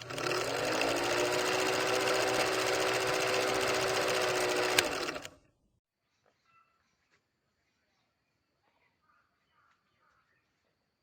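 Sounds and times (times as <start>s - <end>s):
small motor rattling: 0.0s - 5.4s.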